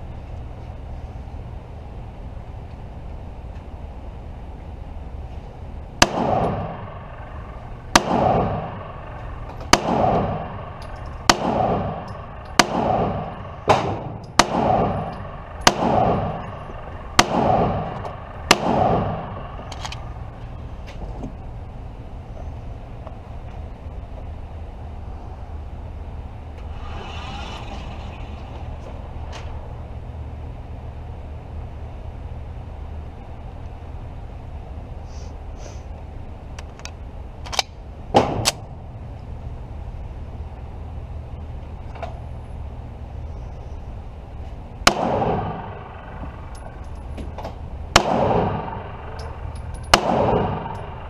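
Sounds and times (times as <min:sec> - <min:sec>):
pistol shots with ringing echo: 0:06.0 - 0:20.7, 0:38.2 - 0:38.7, 0:44.8 - 0:51.0.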